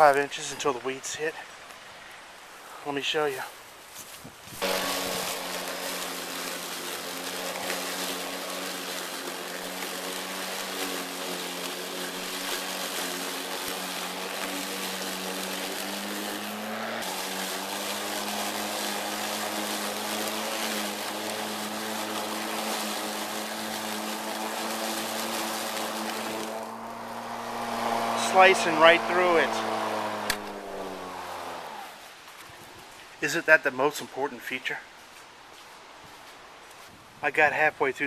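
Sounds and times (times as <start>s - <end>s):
lawn mower cutting grass: 3.0s - 32.5s.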